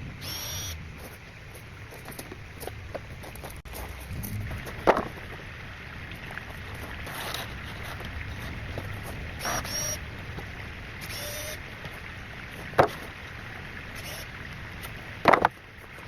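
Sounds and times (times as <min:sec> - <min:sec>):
steady low rumble: 0:00.0 - 0:11.0
short squeaks: 0:00.2 - 0:00.8, 0:09.4 - 0:10.0, 0:11.0 - 0:11.6, 0:14.0 - 0:14.3.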